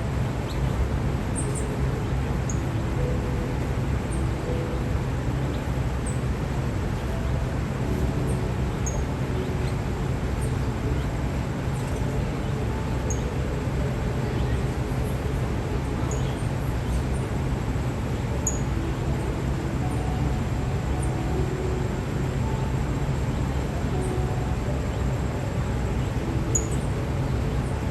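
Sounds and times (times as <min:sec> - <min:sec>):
low background hum: 0:00.0 - 0:27.9
bird chirping high and thin: 0:07.0 - 0:09.8, 0:13.0 - 0:13.4, 0:18.4 - 0:18.7.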